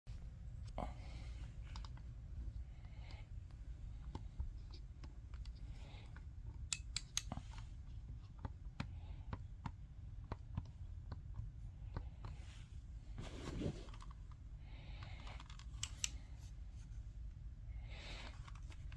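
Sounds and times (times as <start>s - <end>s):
thermostat clicking: 6.6s - 7.4s.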